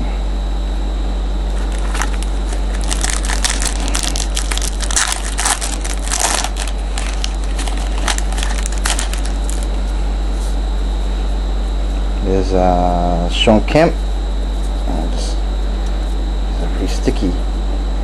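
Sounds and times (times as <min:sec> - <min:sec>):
steady electrical hum: 0:00.0 - 0:18.0
cards being handled: 0:01.5 - 0:09.7
foil wrapper crinkling: 0:01.5 - 0:09.8.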